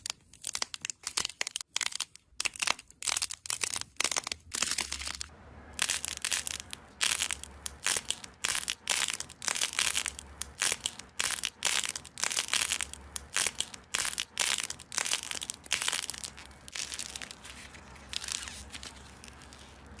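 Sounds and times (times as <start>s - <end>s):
slime crackling and popping: 0.0s - 20.0s
faint low hum: 4.9s - 20.0s.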